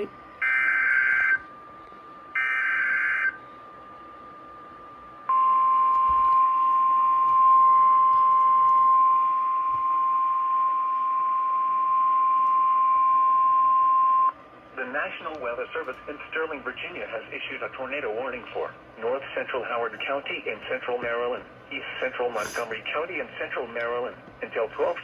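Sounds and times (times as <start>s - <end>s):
steady warning alarm tone: 0.0s - 14.4s.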